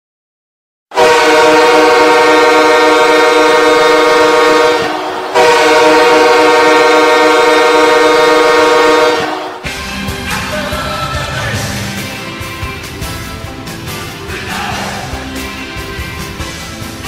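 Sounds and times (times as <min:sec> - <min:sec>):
goal horn blasts: 0:00.9 - 0:09.7.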